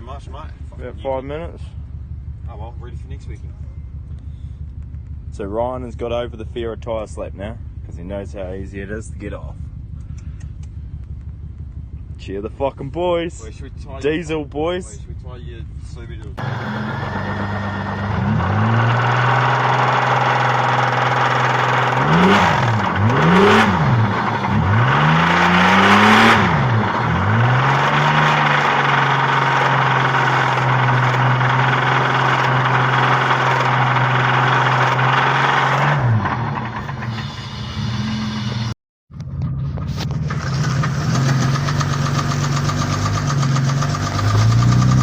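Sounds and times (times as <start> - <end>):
car engine revving: 16.3 - 45.0.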